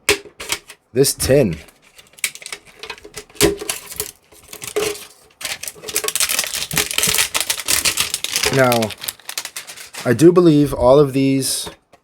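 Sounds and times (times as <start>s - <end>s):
packaging crinkling: 1.7s - 10.3s.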